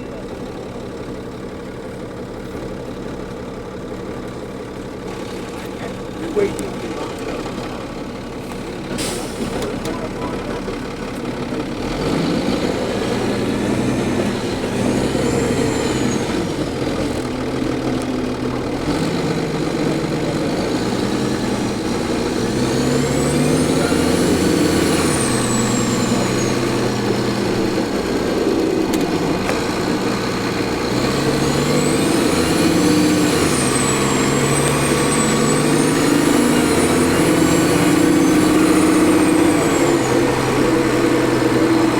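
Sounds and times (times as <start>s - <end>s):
bus diesel engine accelerating: 0.0s - 41.9s.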